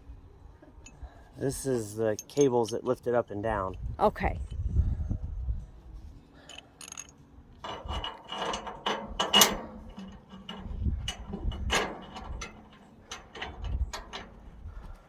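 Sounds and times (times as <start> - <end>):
metallic clicks and rattles: 1.9 - 3.0, 6.4 - 15.0.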